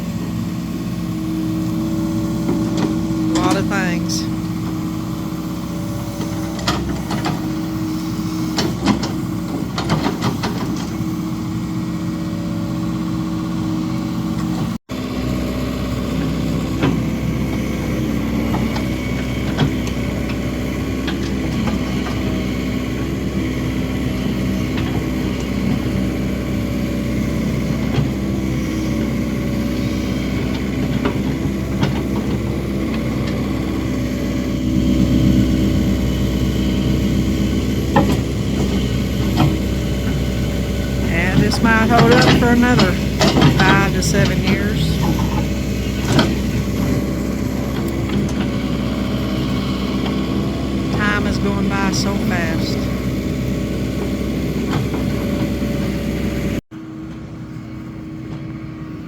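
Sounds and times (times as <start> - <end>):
excavator engine running: 29.7 - 56.4.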